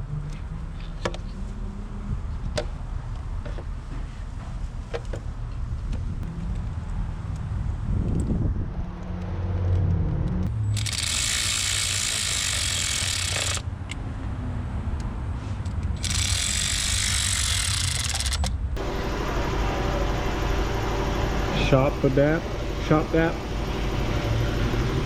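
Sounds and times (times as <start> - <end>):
low hum: 15.9 - 25.0.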